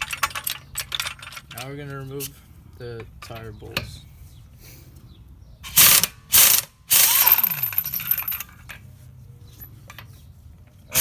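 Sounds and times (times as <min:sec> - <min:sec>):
impact wrench bursts: 0:05.6 - 0:08.2.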